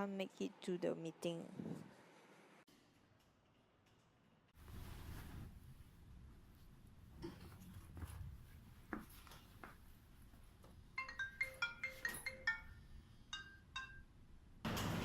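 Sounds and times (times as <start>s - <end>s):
phone ringtone marimba notes: 11.0s - 14.0s.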